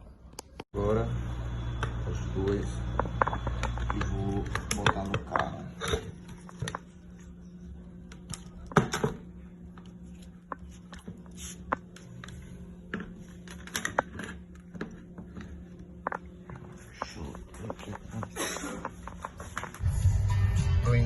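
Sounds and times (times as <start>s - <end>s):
objects clicking and knocking: 2.4s - 6.9s.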